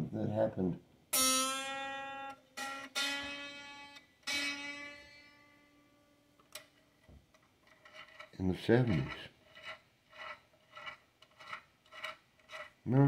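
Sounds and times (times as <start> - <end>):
electric guitar string plucked: 1.2 - 6.1.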